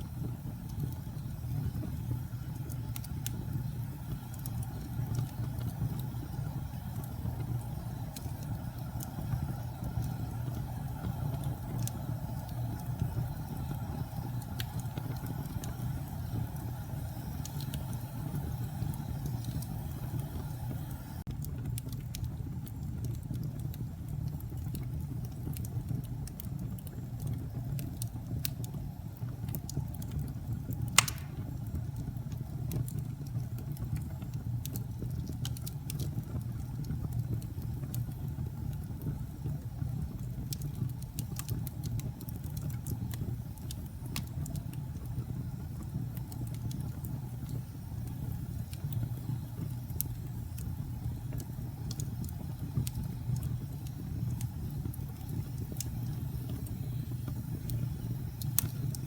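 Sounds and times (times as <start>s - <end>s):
fire flames rumbling: 0.0s - 59.0s
wood fire crackling and popping: 0.0s - 59.0s.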